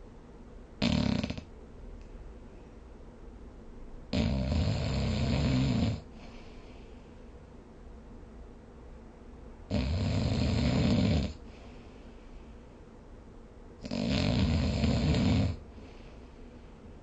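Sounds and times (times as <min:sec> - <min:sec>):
person snoring: 0:00.8 - 0:01.5, 0:04.1 - 0:06.1, 0:09.7 - 0:11.4, 0:13.8 - 0:15.6.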